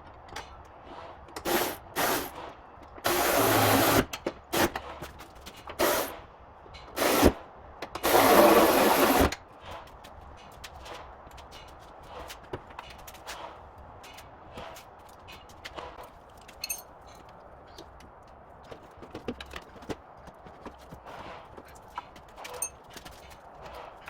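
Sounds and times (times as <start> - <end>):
cordless power tool spinning: 1.5 - 2.3.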